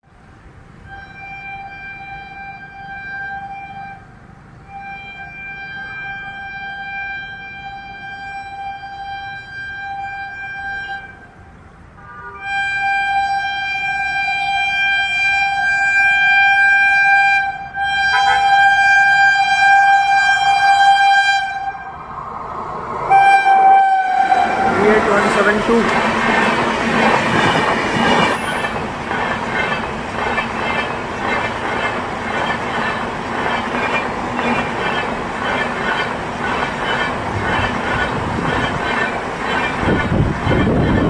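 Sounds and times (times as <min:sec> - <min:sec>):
shrill locomotive horn: 0:00.8 - 0:11.4, 0:12.0 - 0:22.2, 0:23.1 - 0:26.4, 0:27.0 - 0:28.8.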